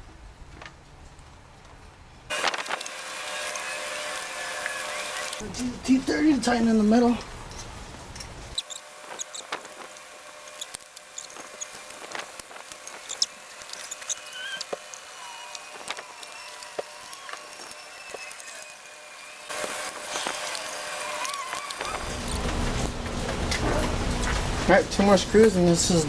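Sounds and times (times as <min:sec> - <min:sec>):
plastic parts handled: 0:08.6 - 0:22.4.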